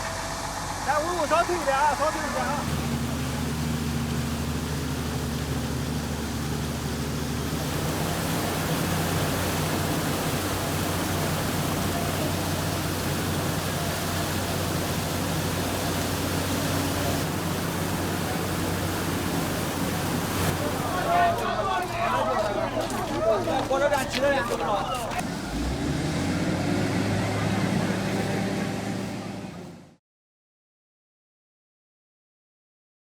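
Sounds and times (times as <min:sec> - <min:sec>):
constant rushing noise: 0:00.0 - 0:29.9
vehicle engine running: 0:00.0 - 0:30.0.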